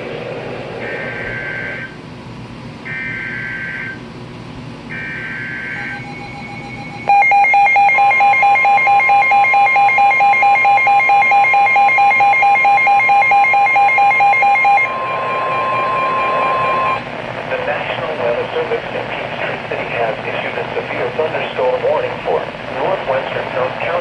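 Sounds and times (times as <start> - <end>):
rapidly pulsing alarm beep: 0.8 - 2.0, 2.9 - 4.0, 4.9 - 17.0
steady warning tone: 0.8 - 2.1, 2.8 - 4.1, 4.9 - 24.0.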